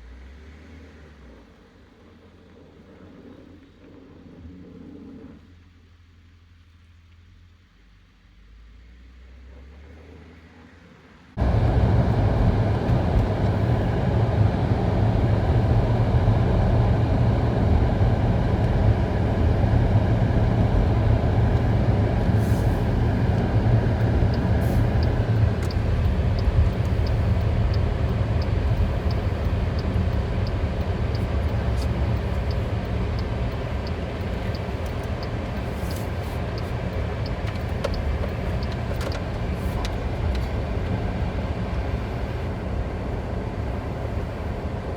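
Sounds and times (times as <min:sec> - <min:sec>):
motor vehicle engine and road rumble: 0:00.0 - 0:44.9
regular light ticking: 0:24.0 - 0:39.1.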